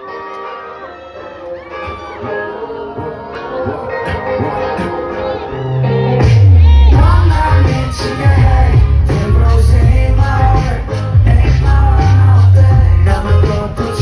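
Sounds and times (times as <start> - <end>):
live rock band music: 0.0 - 14.0
person singing: 1.4 - 14.0
heavy bass: 4.1 - 14.0.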